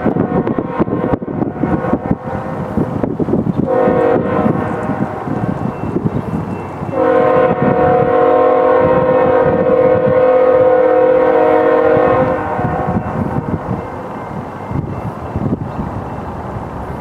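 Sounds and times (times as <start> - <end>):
locomotive air horn blast: 0.0 - 3.0, 3.7 - 5.6, 6.9 - 13.8
train rumbling: 0.0 - 17.0.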